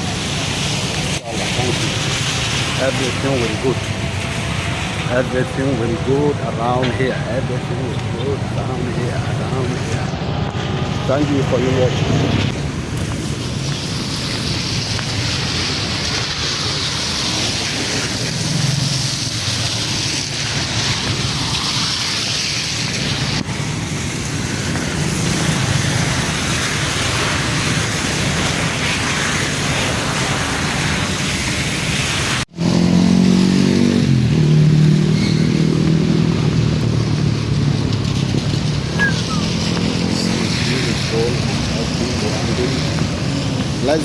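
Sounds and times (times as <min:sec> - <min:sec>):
close engine humming: 0:00.0 - 0:13.2, 0:32.6 - 0:44.0
passing cars and motorcycles: 0:00.0 - 0:44.0.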